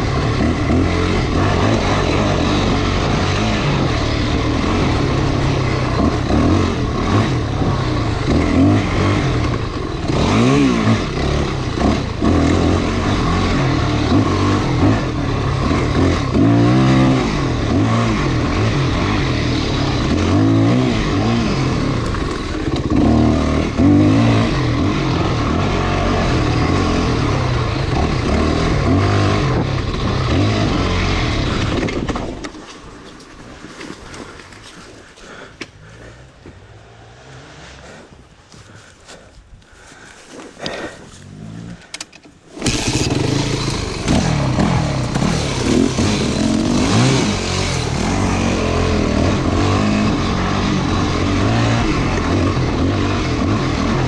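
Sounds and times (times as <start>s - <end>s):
dirt bike engine revving: 0.0s - 32.5s, 40.0s - 54.0s
rough rattly riding noise: 0.0s - 54.0s.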